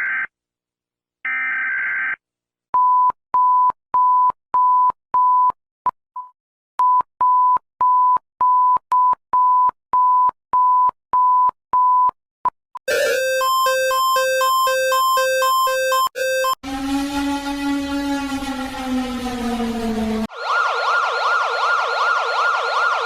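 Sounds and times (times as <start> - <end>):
high electronic beeps: 12.9 - 16.6
two-pitch alternating alert: 12.9 - 20.1
harsh electronic tone: 12.9 - 20.9.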